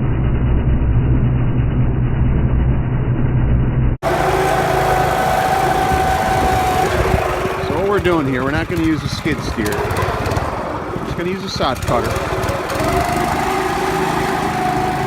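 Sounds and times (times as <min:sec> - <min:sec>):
steady whine: 0:00.0 - 0:15.0
small gasoline engine running: 0:04.0 - 0:15.0.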